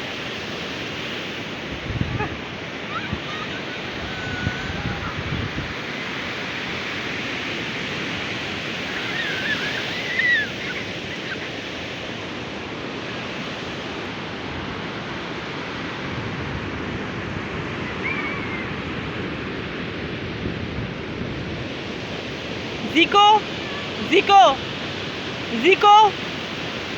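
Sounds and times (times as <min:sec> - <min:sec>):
surf waves breaking: 0:00.0 - 0:26.9
faint distant calls: 0:02.2 - 0:05.3, 0:08.7 - 0:11.8.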